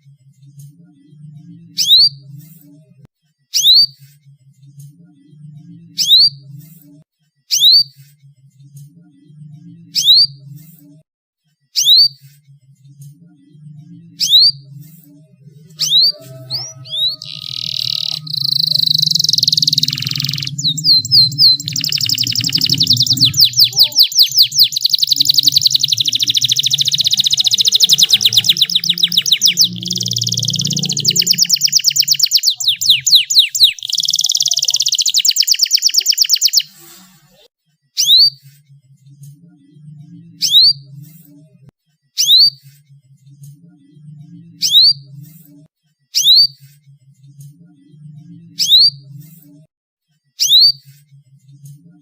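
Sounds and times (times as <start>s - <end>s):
canary trilling: 15.6s - 36.8s
short upward-sweeping chirps: 15.8s - 36.9s
low pulsing beat: 18.6s - 31.6s.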